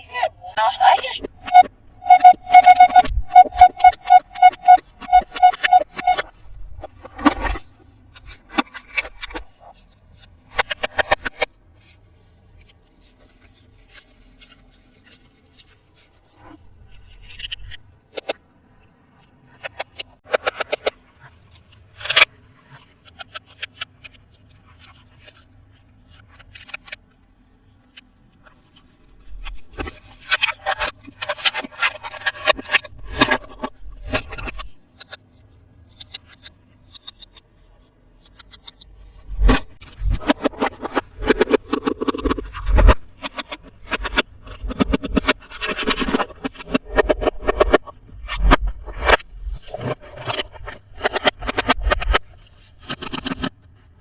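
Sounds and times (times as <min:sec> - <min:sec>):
packaging rustling and scraping: 0:07.2 - 0:17.8.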